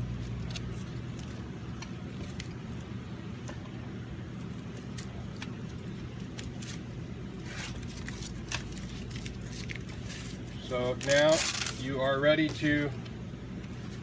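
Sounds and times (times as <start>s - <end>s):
steady low hum: 0.0s - 14.0s
webbing rustling: 4.4s - 13.0s.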